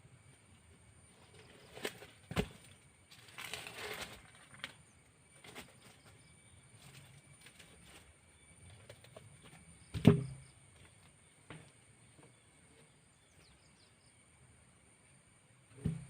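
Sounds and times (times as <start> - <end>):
rustling scrape: 3.2 - 4.6.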